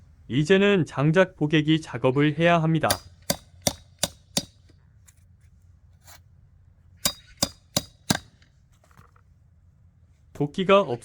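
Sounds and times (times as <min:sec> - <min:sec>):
knife striking into root: 0:02.9 - 0:04.6, 0:07.0 - 0:08.3.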